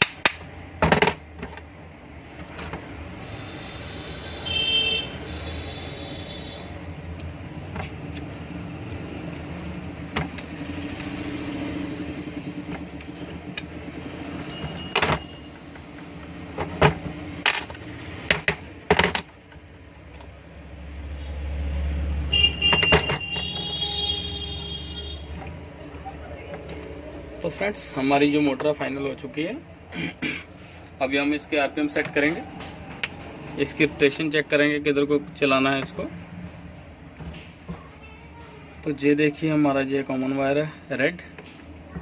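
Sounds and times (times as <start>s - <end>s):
metal tools clinking and knocking: 16.6s - 19.3s.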